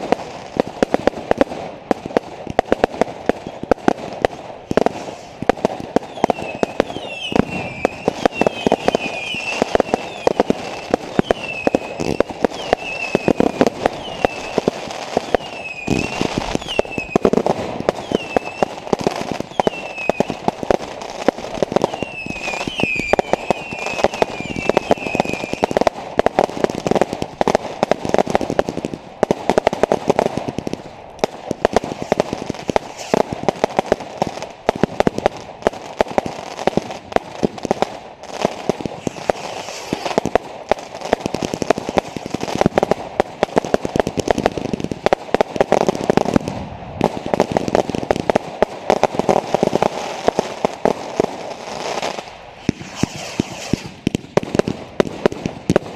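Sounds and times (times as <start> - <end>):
fireworks bangs and crackles: 0.0 - 55.9
wavering whistle: 6.2 - 13.4.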